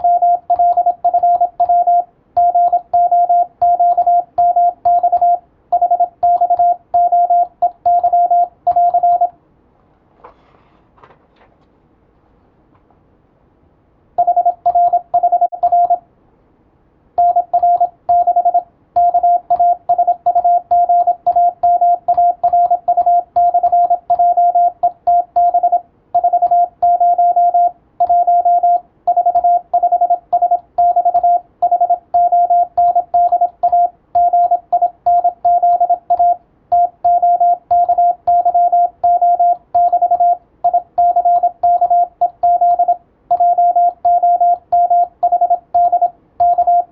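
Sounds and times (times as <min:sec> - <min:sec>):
morse code beep tone: 0:00.0 - 0:09.3, 0:14.2 - 0:16.0, 0:17.2 - 0:46.9.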